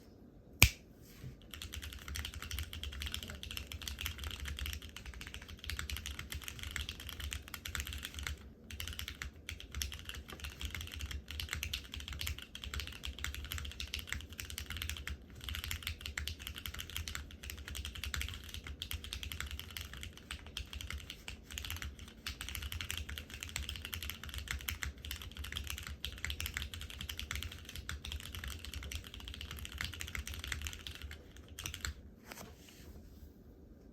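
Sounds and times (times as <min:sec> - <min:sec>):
sharp click: 0:00.6 - 0:00.9
mechanical keyboard typing: 0:01.4 - 0:32.0.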